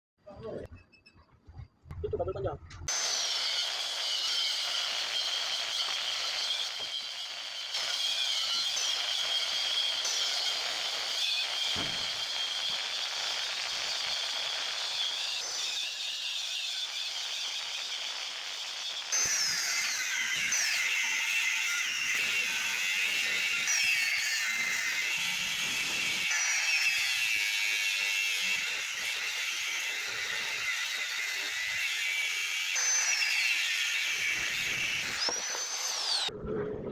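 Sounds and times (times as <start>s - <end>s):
angle grinder cutting steel: 2.9s - 36.3s.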